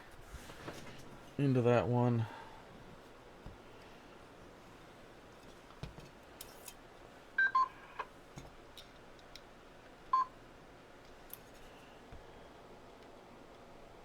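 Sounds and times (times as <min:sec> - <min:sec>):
transceiver key-press beeps: 0:07.4 - 0:07.7.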